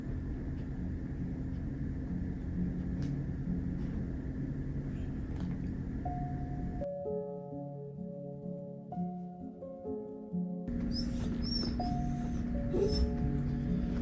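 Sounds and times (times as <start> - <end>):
faint hum: 0.0 - 6.9, 10.7 - 14.0.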